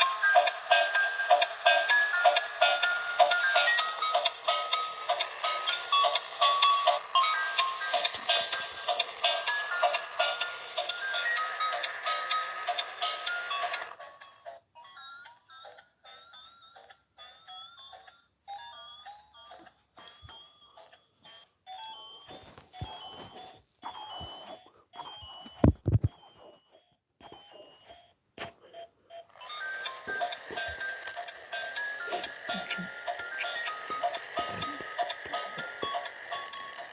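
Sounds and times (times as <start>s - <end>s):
toy clicks: 0.0s - 22.2s, 28.7s - 36.9s
tinny electronic toy tune: 0.0s - 36.9s
electronic beeps and chirps: 32.5s - 33.8s.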